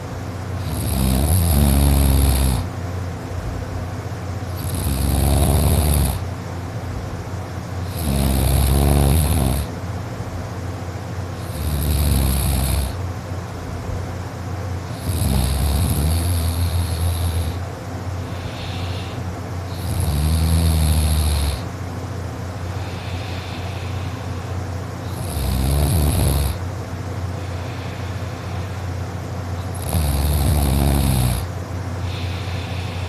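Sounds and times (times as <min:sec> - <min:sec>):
boy snoring loudly: 0:00.6 - 0:02.7, 0:04.5 - 0:06.3, 0:07.8 - 0:09.7, 0:11.4 - 0:13.0, 0:14.9 - 0:17.6, 0:18.3 - 0:21.7, 0:25.0 - 0:26.6, 0:29.6 - 0:33.0
soft breaths: 0:16.2 - 0:19.9, 0:22.6 - 0:25.2, 0:27.2 - 0:29.8, 0:32.0 - 0:33.0.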